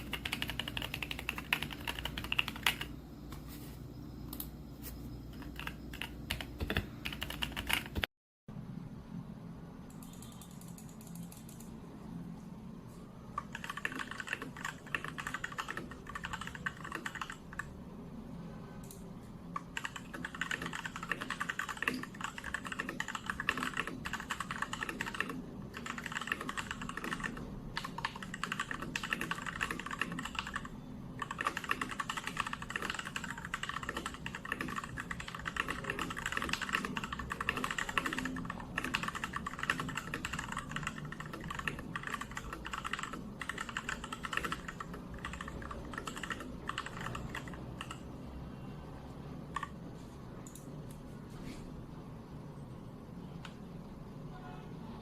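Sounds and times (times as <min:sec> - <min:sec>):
mechanical keyboard typing: 0:00.0 - 0:03.0, 0:05.3 - 0:08.1, 0:10.0 - 0:11.8, 0:13.4 - 0:17.7, 0:19.6 - 0:48.1, 0:49.4 - 0:49.8.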